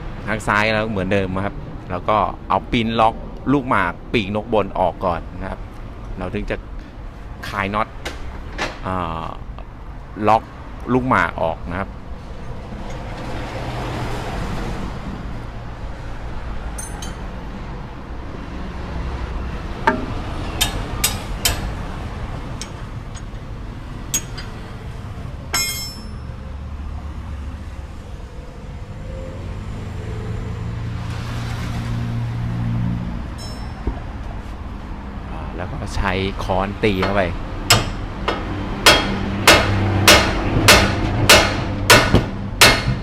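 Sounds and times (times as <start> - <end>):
vehicles humming: 0.0 - 43.0
metallic clinks of hand tools: 16.8 - 17.2, 24.2 - 24.6, 25.6 - 26.3.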